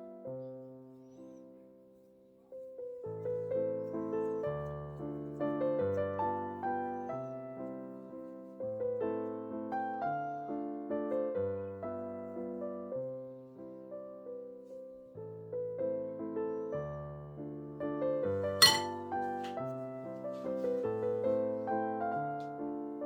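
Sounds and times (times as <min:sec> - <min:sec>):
gentle piano music: 0:00.0 - 0:23.0
sharp clink: 0:18.6 - 0:19.0.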